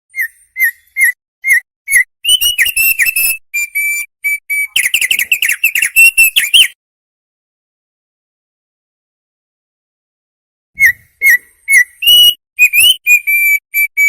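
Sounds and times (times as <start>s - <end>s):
songbird whistling and trilling: 0.1s - 6.8s, 10.8s - 14.0s.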